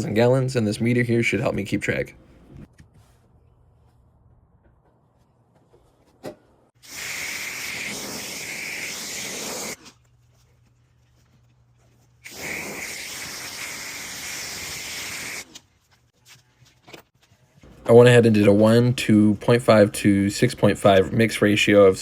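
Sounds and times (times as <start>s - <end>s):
pressure washer spray hiss: 6.8s - 9.8s, 12.2s - 15.5s.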